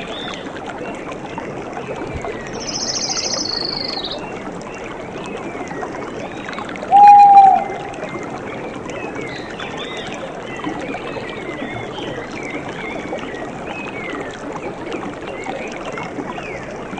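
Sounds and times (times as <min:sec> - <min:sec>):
rushing water: 0:00.0 - 0:16.9
loud whistled note: 0:06.9 - 0:07.8
wild animal calls: 0:06.9 - 0:08.0.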